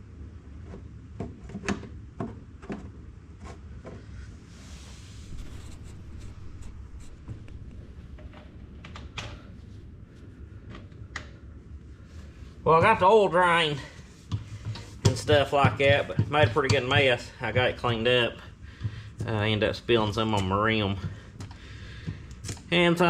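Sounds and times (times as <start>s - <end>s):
soft rushing rustle: 4.3s - 8.7s.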